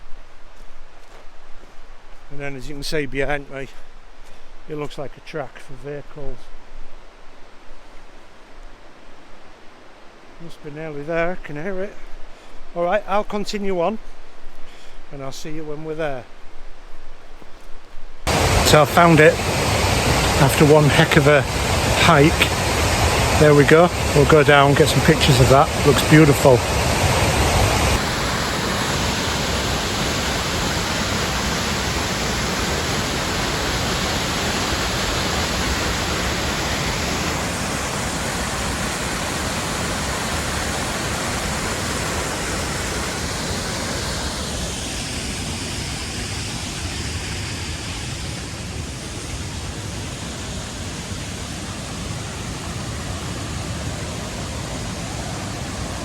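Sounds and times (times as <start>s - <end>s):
waterfall rushing water: 18.3s - 56.0s.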